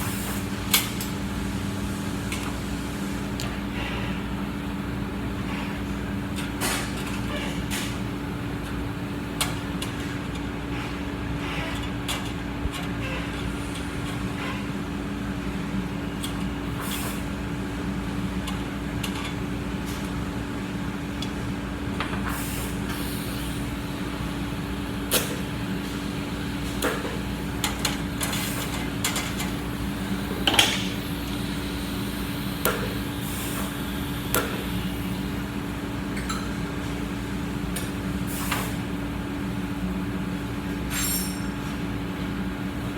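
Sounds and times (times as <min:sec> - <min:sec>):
welding arc buzzing: 0:29.5 - 0:35.6.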